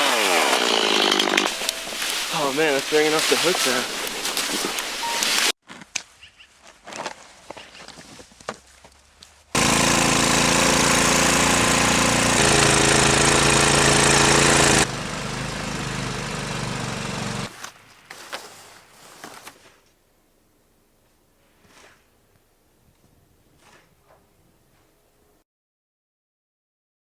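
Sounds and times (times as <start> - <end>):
small petrol engine running: 0.0 - 3.8, 9.6 - 17.6.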